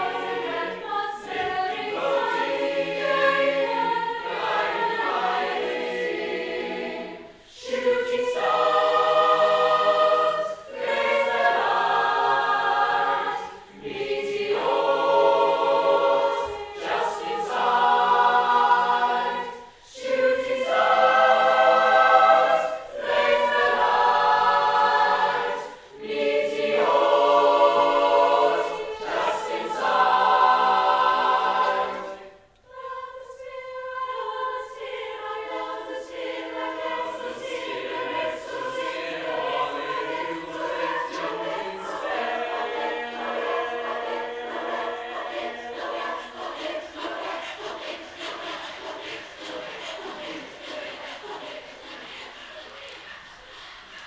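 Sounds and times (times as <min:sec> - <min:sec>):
choir singing in harmony: 0:00.0 - 0:54.0.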